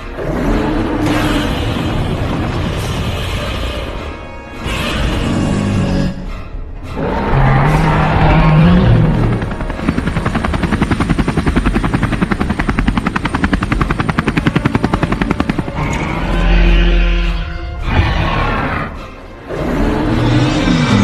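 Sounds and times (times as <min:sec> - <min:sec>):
helicopter rotor chopping: 0:08.0 - 0:16.3.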